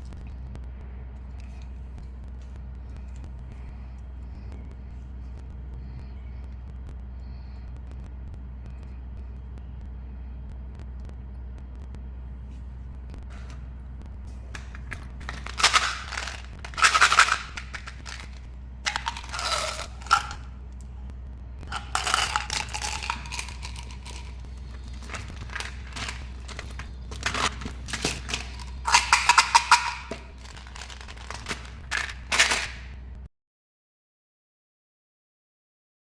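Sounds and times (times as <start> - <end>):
steady low hum: 0.0 - 33.3
plastic wrappers crinkling: 14.5 - 20.5, 21.7 - 32.9.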